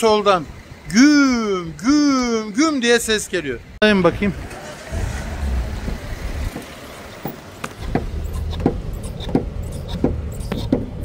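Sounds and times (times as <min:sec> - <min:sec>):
van engine rumbling: 0:00.0 - 0:11.0
short sharp knocks: 0:05.9 - 0:10.9.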